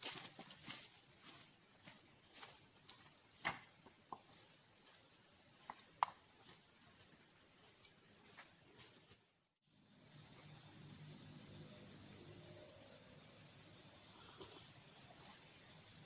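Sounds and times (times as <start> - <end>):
insects chirring: 0.0 - 16.0.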